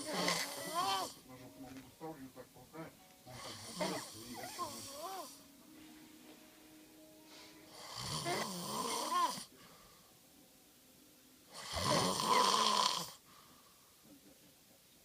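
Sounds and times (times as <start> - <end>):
person snoring loudly: 0.0 - 1.2, 7.7 - 9.5, 11.5 - 13.2.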